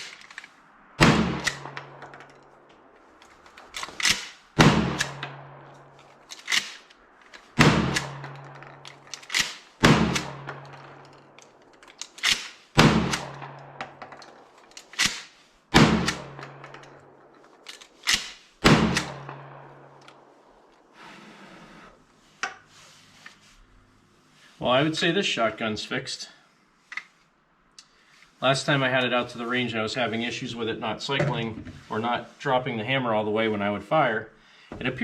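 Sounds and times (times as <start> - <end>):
shotgun shots: 1.0 - 2.2, 3.8 - 5.7, 7.6 - 8.6, 9.3 - 11.0, 12.2 - 14.0, 15.0 - 17.2, 18.1 - 20.3
shotgun pump clack: 6.0 - 15.3.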